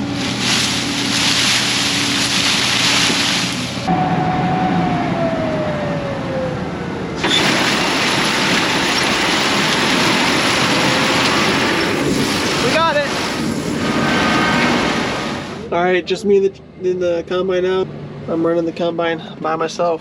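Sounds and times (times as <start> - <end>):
combine harvester running: 0.0 - 6.2, 7.2 - 15.7
tone sliding down in pitch: 3.9 - 7.2.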